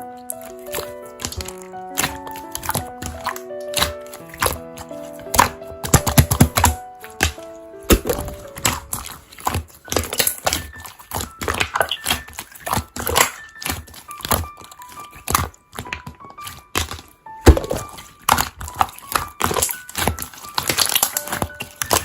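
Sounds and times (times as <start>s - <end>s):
soft background music: 0.0s - 22.0s
slime squeezed wet clicks: 9.4s - 16.0s.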